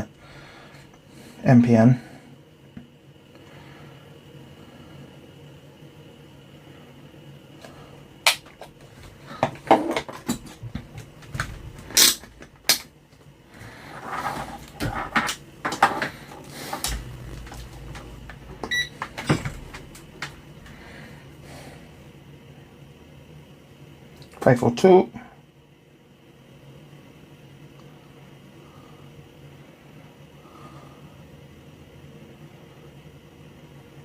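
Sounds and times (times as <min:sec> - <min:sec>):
short electronic beep: 0:17.0 - 0:19.1.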